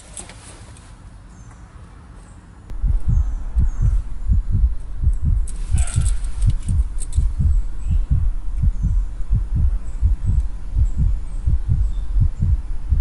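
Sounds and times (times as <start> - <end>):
music with deep bass beat: 2.7 - 13.0.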